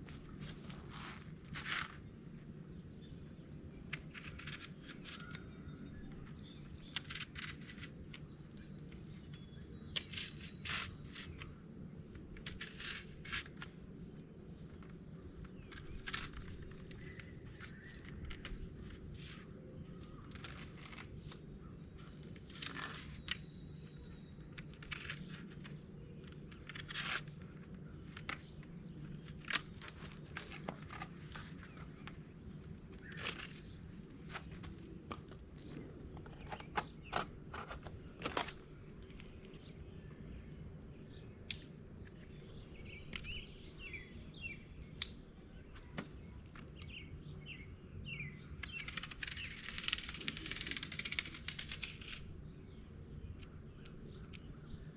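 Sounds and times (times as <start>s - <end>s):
birds chirping: 0.0s - 54.9s
hands clicking and crinkling: 48.6s - 52.3s.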